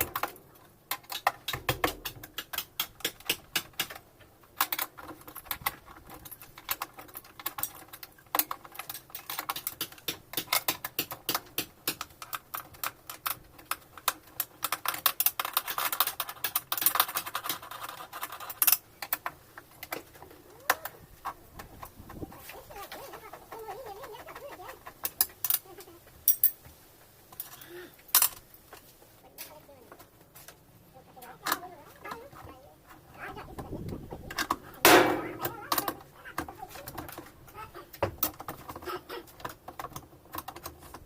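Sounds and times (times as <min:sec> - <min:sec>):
clattering of small parts and tools: 0:00.0 - 0:26.7, 0:27.3 - 0:30.6.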